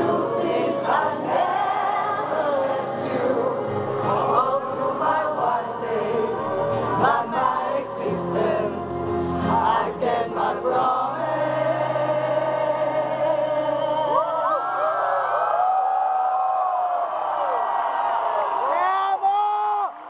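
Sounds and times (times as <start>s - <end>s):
crowd singing at concert: 0.0s - 14.9s.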